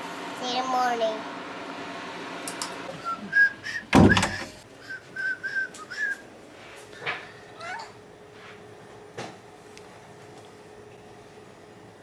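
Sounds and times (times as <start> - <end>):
loud bump: 3.9 - 4.6.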